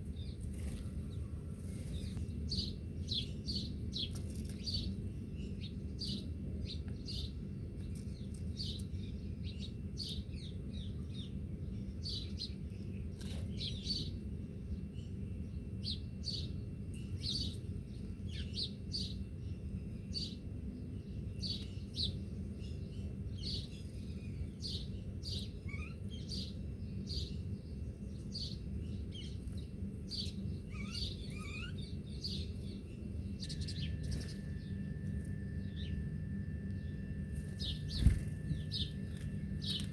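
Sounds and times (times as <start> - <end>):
small birds chirping: 0.0 - 39.9
steady low rumble: 26.4 - 39.9.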